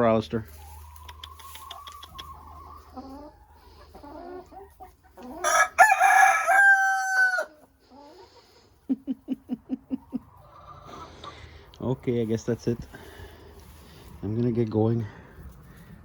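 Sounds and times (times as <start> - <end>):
hens clucking softly: 0.5 - 5.5, 7.4 - 11.8
rooster crowing: 5.4 - 7.6.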